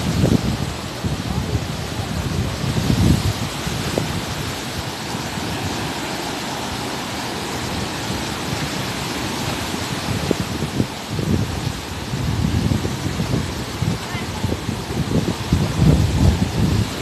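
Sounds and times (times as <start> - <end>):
surf breaking on beach: 0.0 - 17.0.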